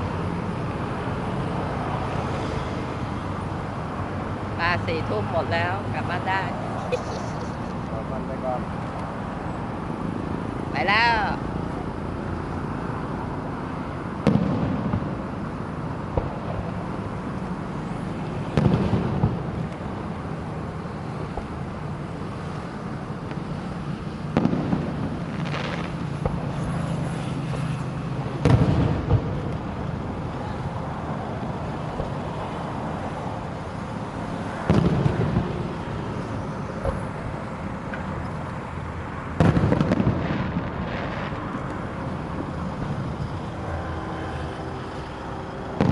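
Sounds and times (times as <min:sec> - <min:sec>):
fireworks crackling: 0:03.5 - 0:38.7, 0:39.3 - 0:45.9
fireworks bangs: 0:14.1 - 0:17.3, 0:18.4 - 0:20.3, 0:22.4 - 0:32.4, 0:33.6 - 0:37.2, 0:39.4 - 0:45.9.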